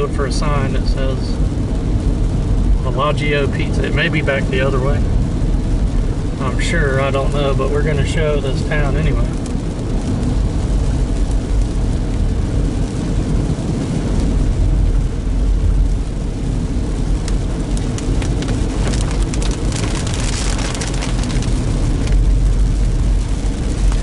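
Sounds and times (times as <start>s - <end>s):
car road and engine rumble: 0.0s - 24.0s
rain hitting car: 0.0s - 24.0s
sharp ticks and spatter: 17.3s - 21.6s.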